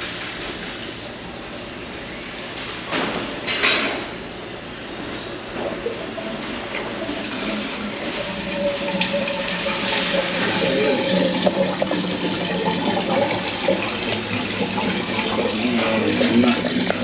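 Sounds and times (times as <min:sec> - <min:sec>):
steady hum: 0:00.0 - 0:17.0
water draining and gurgling: 0:05.6 - 0:17.0.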